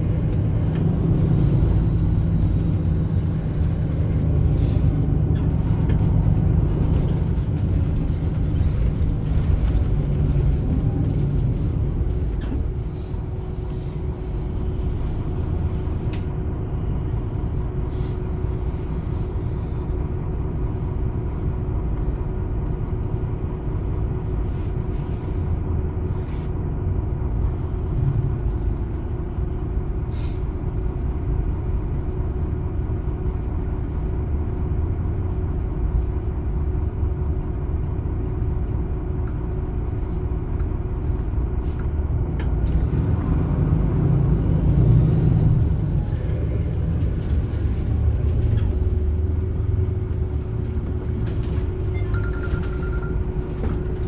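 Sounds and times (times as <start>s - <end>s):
bus diesel engine rumbling: 0.0s - 54.0s.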